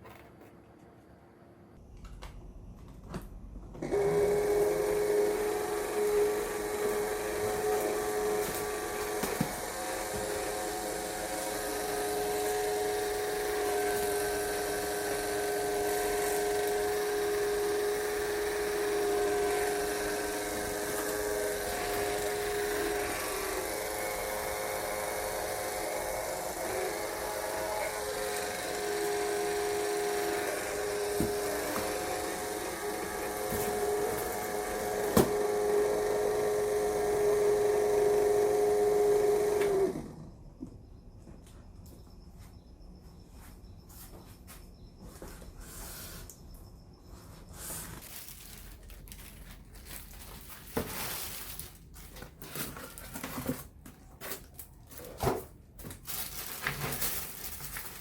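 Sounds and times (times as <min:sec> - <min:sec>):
electric motor whining: 0:03.8 - 0:40.3.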